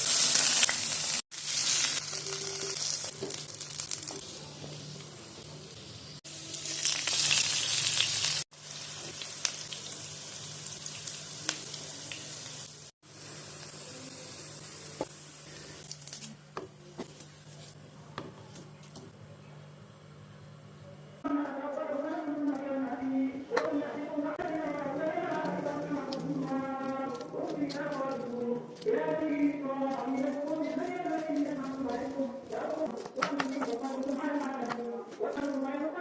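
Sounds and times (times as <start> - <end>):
food sizzling in hot oil: 0.0 - 16.4.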